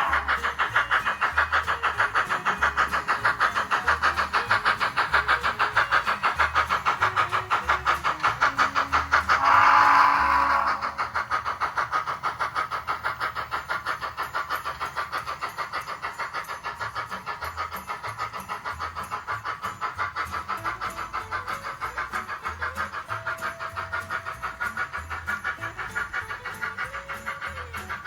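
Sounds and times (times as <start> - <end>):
model train running rhythmically: 0.0 - 28.0.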